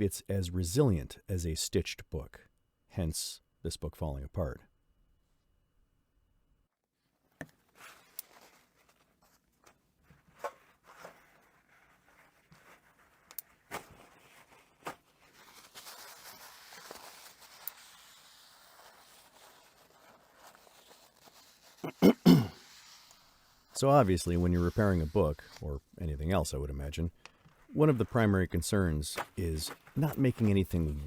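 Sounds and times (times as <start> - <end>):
paper rustling: 7.5 - 21.9, 22.6 - 25.6, 27.2 - 31.0.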